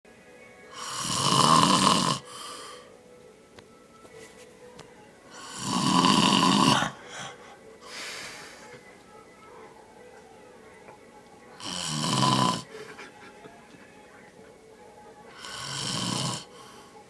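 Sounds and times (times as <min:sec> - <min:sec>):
man snoring loudly: 0:00.7 - 0:02.6, 0:05.3 - 0:07.0, 0:11.6 - 0:12.8, 0:15.3 - 0:16.8.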